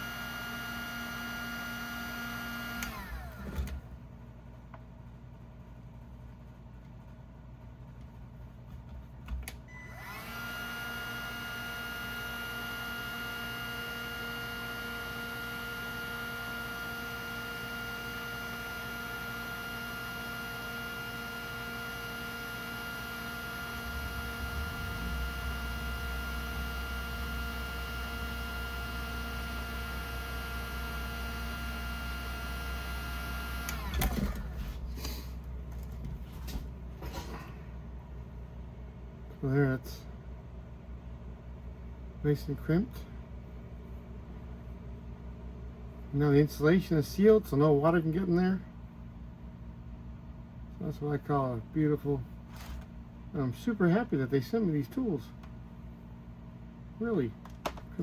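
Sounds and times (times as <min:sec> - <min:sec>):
heat gun fan whine: 0:00.0 - 0:58.0
low hum: 0:23.2 - 0:30.2.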